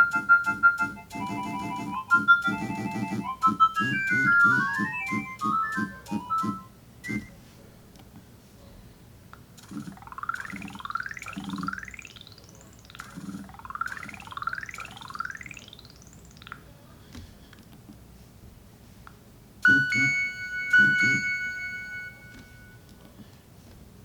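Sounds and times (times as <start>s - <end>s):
electronic ringtone sweeps: 0.0s - 7.4s, 9.6s - 16.4s, 19.6s - 22.8s.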